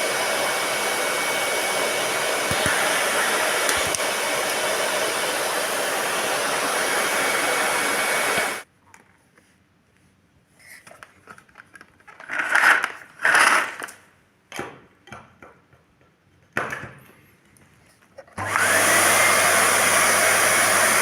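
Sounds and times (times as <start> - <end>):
vacuum motor humming and whining: 0.0 - 8.6, 18.4 - 21.0
plastic parts scraping and clattering: 10.6 - 14.1.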